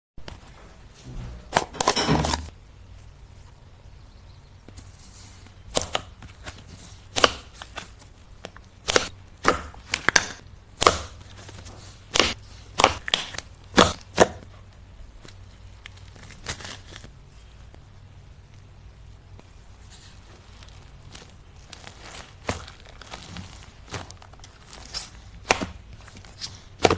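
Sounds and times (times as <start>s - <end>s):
slime popping and crackling: 5.7s - 14.4s, 20.3s - 26.9s.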